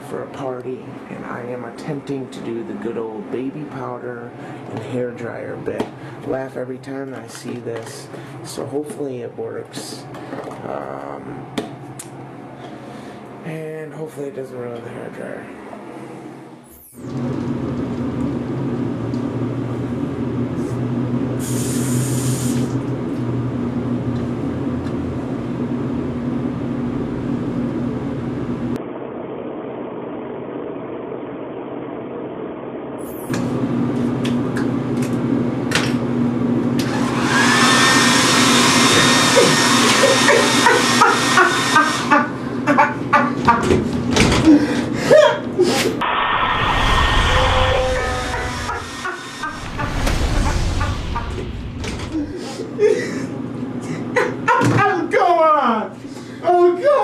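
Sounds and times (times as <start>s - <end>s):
hair dryer running: 36.7s - 42.9s, 48.0s - 49.5s.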